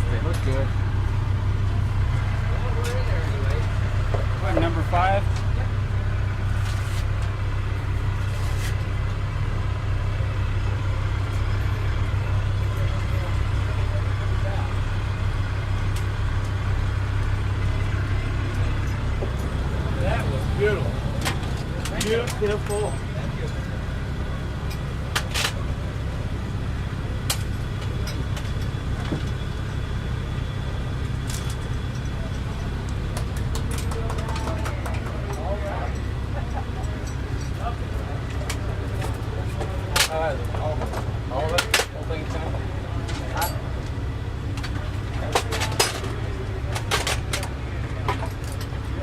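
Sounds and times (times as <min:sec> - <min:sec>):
sports car engine idling: 0:00.0 - 0:49.0.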